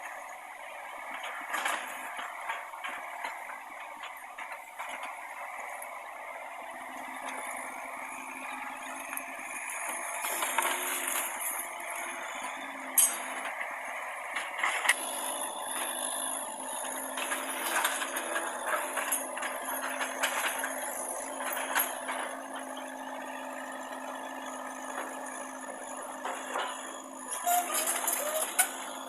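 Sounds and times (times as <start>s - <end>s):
mini excavator running: 0.0s - 29.0s.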